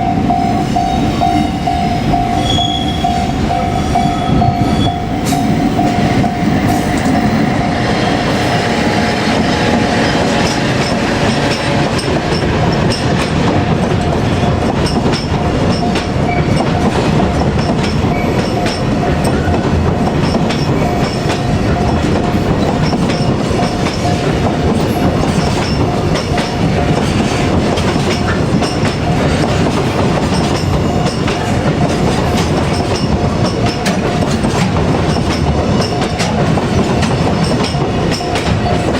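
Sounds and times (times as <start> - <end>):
steady high tone: 0.0 - 10.6
freight train rolling past: 0.0 - 38.9
wheels clacking over rail joints: 4.0 - 38.9.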